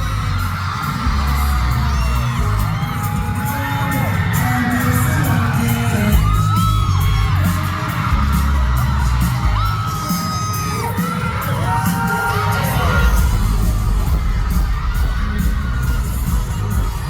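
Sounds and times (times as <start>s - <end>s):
fans screaming: 0.0s - 17.0s
live pop concert music: 0.0s - 17.0s.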